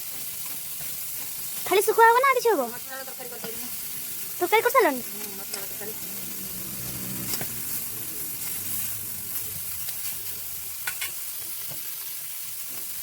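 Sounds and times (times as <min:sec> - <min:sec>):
fish sizzling in oil: 0:00.0 - 0:13.0.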